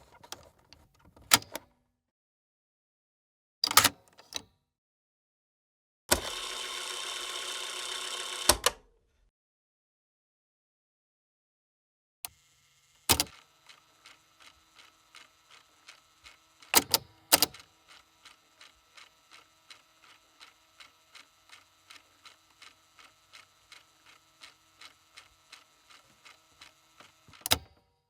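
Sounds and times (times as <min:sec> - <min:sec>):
audio playback gear clicking: 0:27.4 - 0:27.6.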